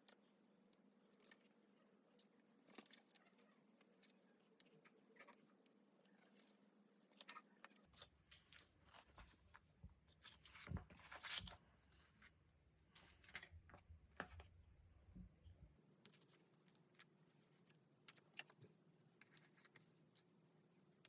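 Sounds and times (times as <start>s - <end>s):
paper and sticker crinkling: 2.2s - 5.4s, 6.1s - 14.5s, 16.1s - 20.3s.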